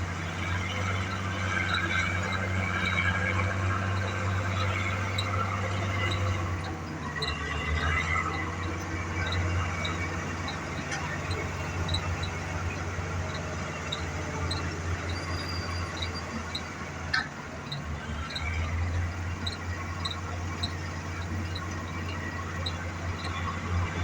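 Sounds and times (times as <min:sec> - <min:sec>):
excavator diesel engines: 0:00.0 - 0:24.0
short high squeaks: 0:13.2 - 0:17.8.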